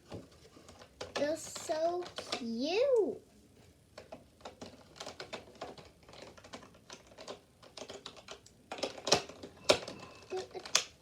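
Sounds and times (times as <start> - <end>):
plastic toy pieces clicking: 0.7 - 2.5, 4.0 - 11.0.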